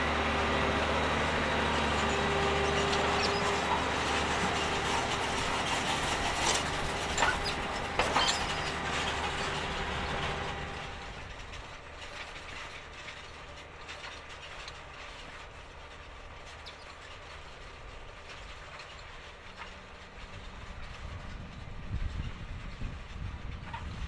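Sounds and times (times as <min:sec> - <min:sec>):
tractor engine running: 0:00.0 - 0:24.0
machinery clicks and knocks: 0:01.7 - 0:17.5.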